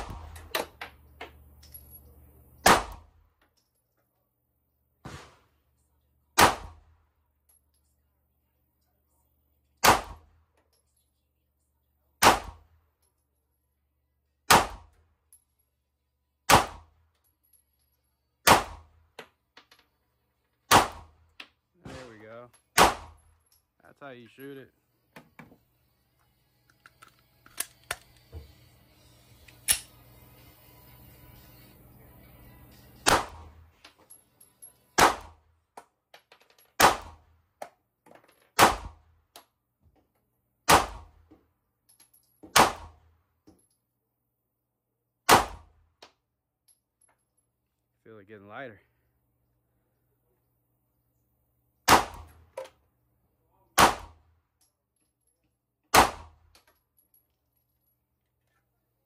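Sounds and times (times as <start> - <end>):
pistol shots: 0.0 - 0.9, 2.6 - 3.2, 5.0 - 5.6, 6.4 - 7.0, 9.8 - 10.4, 12.2 - 12.8, 14.5 - 15.0, 16.5 - 17.0, 18.4 - 19.0, 20.7 - 21.2, 21.8 - 23.3, 33.0 - 33.7, 35.0 - 35.4, 36.8 - 37.3, 38.6 - 39.1, 40.7 - 41.2, 42.5 - 43.0, 45.3 - 45.8, 51.8 - 52.6, 53.8 - 54.3, 55.9 - 56.5.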